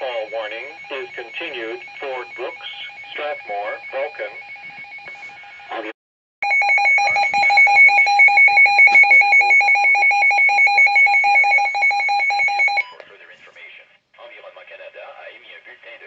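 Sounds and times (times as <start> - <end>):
announcer speaking: 0.0 - 4.5, 6.7 - 13.5.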